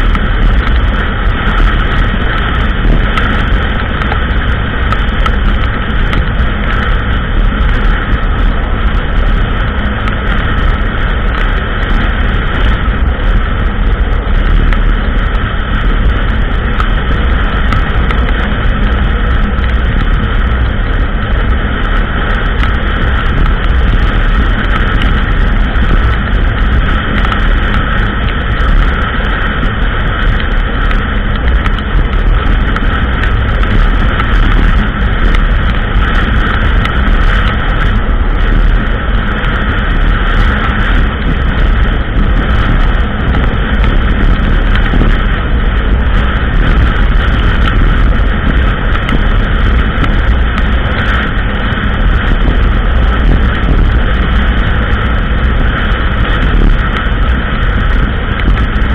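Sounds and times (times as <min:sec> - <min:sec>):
quad bike engine running: 0:00.0 - 0:58.9
small clicks and knocks: 0:22.5 - 0:25.2.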